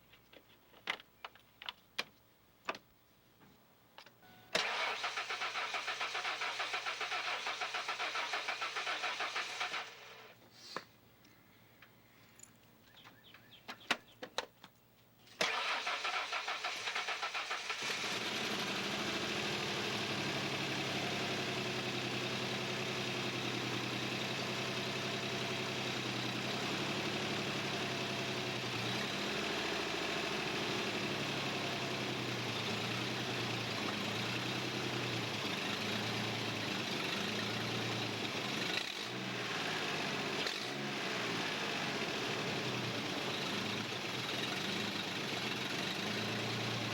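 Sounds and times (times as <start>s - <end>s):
engine cranking and idling: 4.6s - 10.4s, 15.4s - 46.9s.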